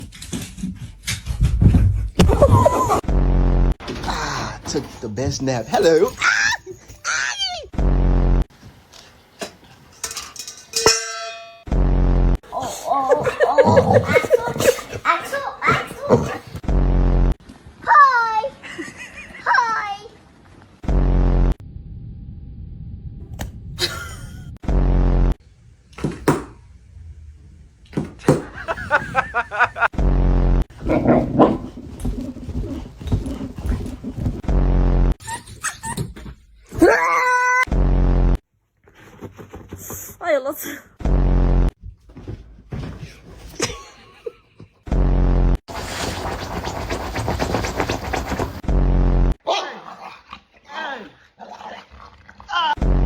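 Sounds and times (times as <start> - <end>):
metallic ding: 10.0 - 11.7
loud buzzing tone: 20.8 - 22.6.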